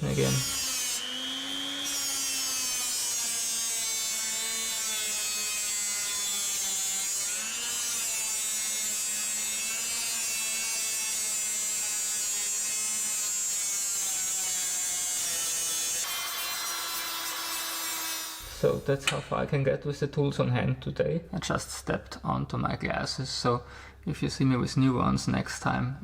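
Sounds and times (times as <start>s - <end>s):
grinder whining on metal: 0.0s - 18.8s.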